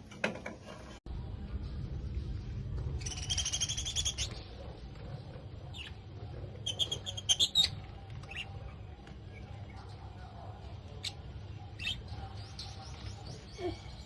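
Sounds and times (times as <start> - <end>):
low steady rumble: 1.1 - 3.4
small birds chirping: 2.8 - 14.0.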